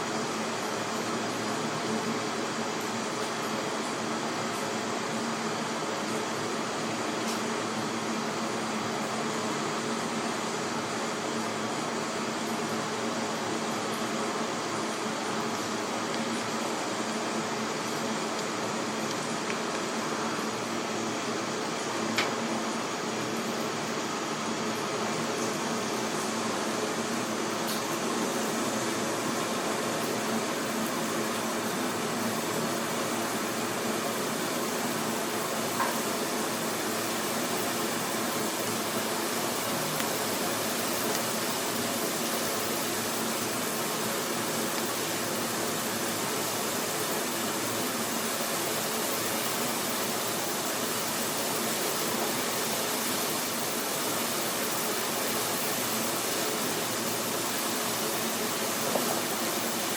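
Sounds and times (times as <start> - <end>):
water boiling: 26.4 - 59.9.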